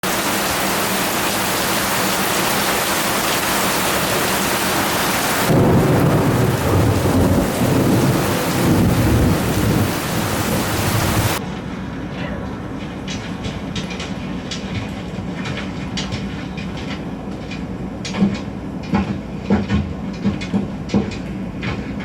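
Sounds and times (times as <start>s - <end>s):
heavy rain hissing: 0.0s - 11.4s
deep rumble of thunder: 5.4s - 11.4s.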